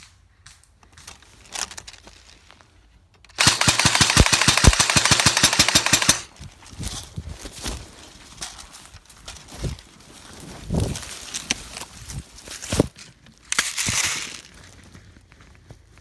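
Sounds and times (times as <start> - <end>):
airsoft gun automatic fire: 3.3 - 6.3.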